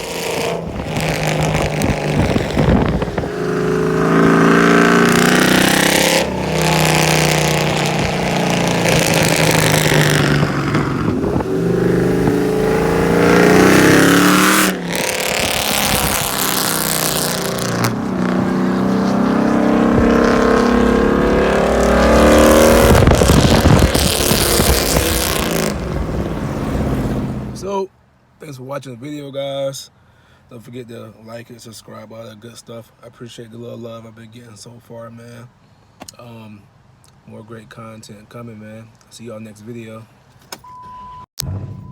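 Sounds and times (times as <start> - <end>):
car engine revving loudly: 0.0 - 27.6.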